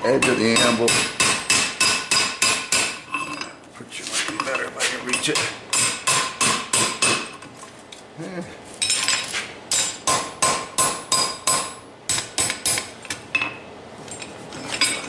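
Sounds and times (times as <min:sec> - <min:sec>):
hammer striking metal on anvil: 0:00.1 - 0:03.0, 0:05.1 - 0:07.3, 0:09.7 - 0:13.6.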